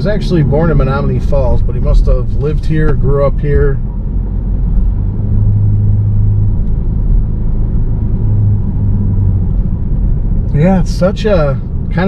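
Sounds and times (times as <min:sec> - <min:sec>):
car engine and road noise: 0:00.0 - 0:12.0
low hum: 0:00.0 - 0:12.0.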